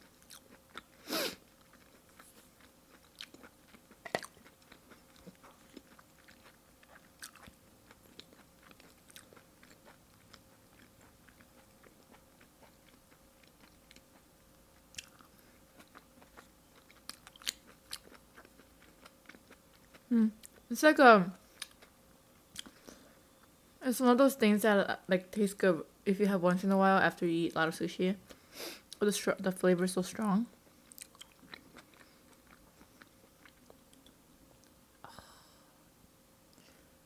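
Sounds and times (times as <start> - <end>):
wet chewing mouth clicks: 2.9 - 14.2.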